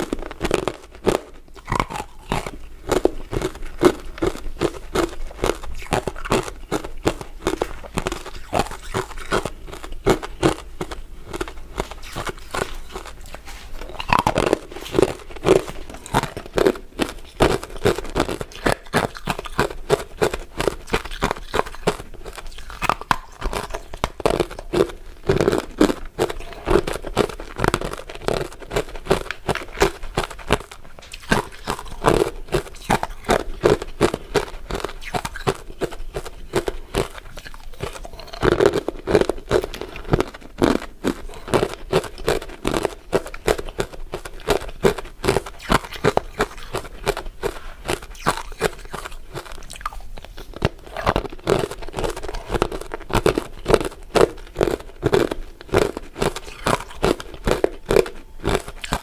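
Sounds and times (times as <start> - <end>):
crunching and chewing ice dessert: 0.0 - 59.0.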